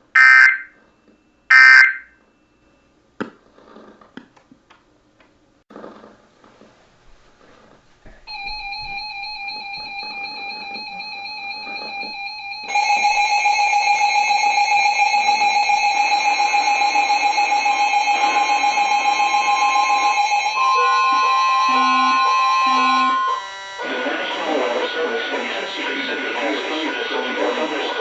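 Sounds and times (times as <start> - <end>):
buzzy electronic alert tone: 0.2 - 0.7, 1.5 - 2.0, 20.6 - 24.9.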